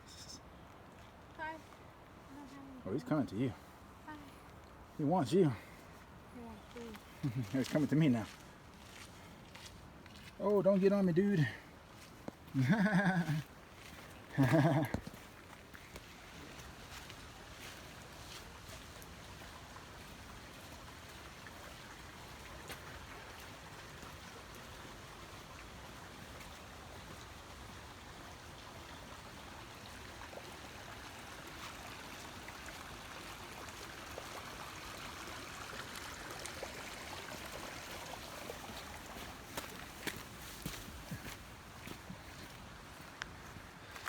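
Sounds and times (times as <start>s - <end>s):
footsteps on trail: 5.7s - 24.8s, 38.1s - 44.0s
mountain stream rushing: 11.0s - 44.0s.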